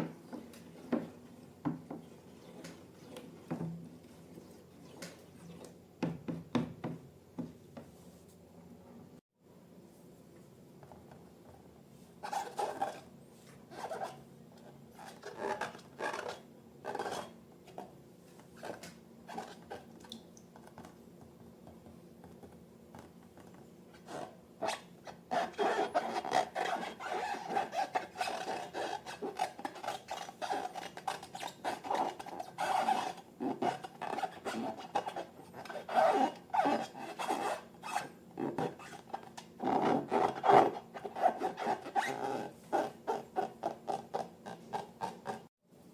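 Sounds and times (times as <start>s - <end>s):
rubbing and scraping slime: 14.9s - 17.8s, 24.0s - 45.5s.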